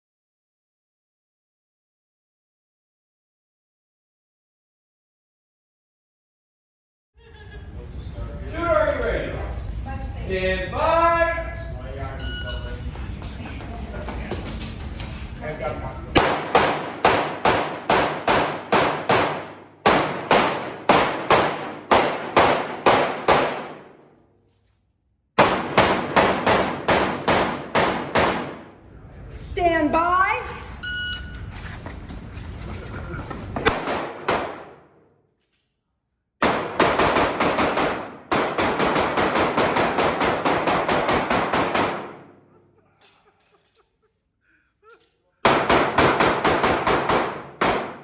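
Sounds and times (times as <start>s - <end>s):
gunshots: 16.2s - 24.0s, 25.4s - 28.8s, 33.6s - 35.0s, 36.4s - 42.5s, 45.4s - 48.0s.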